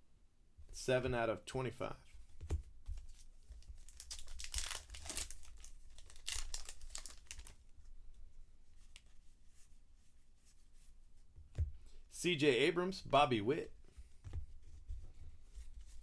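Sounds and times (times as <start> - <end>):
foil wrapper tearing and crinkling: 3.8 - 7.6.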